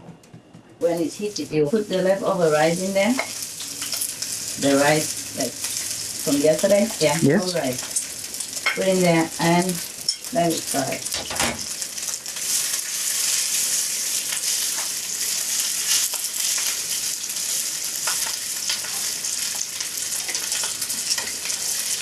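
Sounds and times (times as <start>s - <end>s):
rice sizzling in oil: 0.9s - 22.0s.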